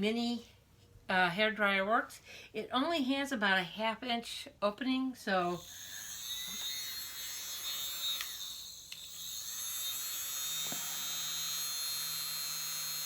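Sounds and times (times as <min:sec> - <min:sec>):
small hair dryer whining: 0:05.6 - 0:13.0.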